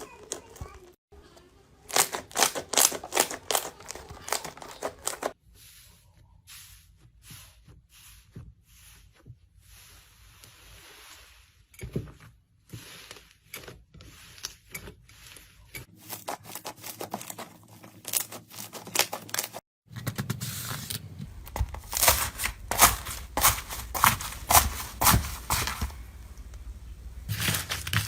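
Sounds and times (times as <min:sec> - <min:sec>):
slime crackling and tearing: 0:01.9 - 0:05.3, 0:21.3 - 0:26.0.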